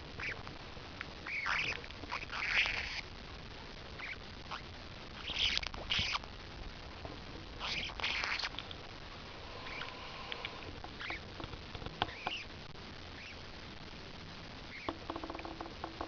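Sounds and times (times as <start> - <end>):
parrot scratchy hissing: 1.2 - 3.0, 4.0 - 6.2, 7.6 - 8.6, 9.3 - 11.2, 12.0 - 12.5
faint clicks: 9.8 - 12.4.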